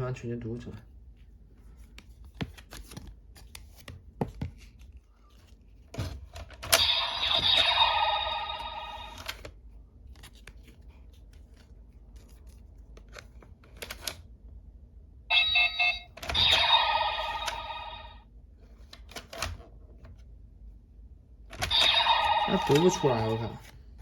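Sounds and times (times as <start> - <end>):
ringing tone: 15.3 - 18.2
toy electronic tones: 15.3 - 18.2, 21.7 - 23.5.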